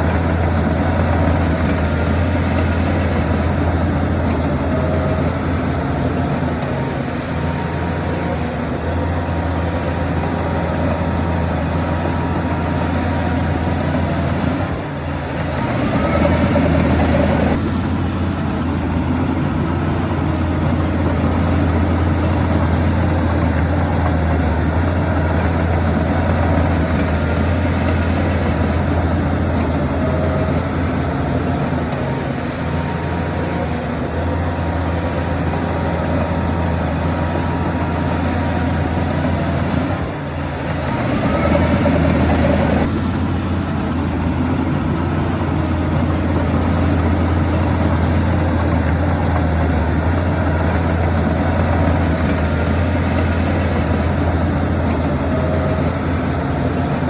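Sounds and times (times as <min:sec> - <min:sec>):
heavy diesel machinery humming: 0:00.0 - 0:57.0.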